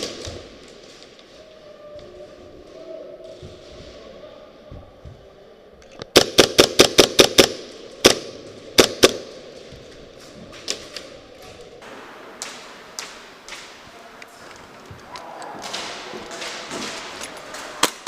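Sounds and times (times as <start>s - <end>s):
airsoft guns firing: 6.1s - 9.4s.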